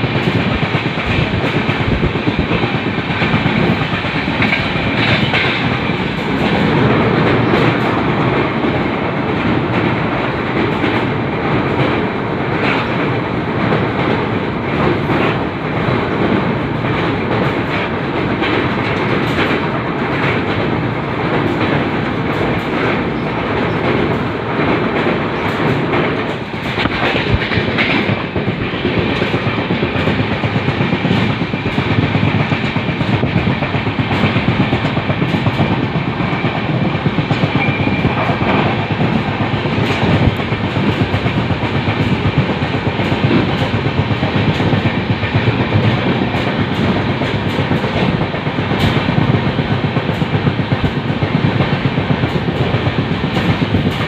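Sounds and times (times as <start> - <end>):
train wheels rumbling on rail: 0.0 - 54.0
wheels clicking over rail joints: 0.0 - 54.0.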